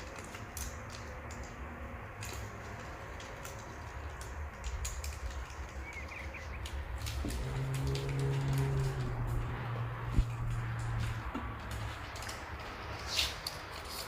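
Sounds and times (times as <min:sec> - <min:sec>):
hands clicking and tapping parts: 0:00.0 - 0:09.4
low steady rumble: 0:00.0 - 0:13.0.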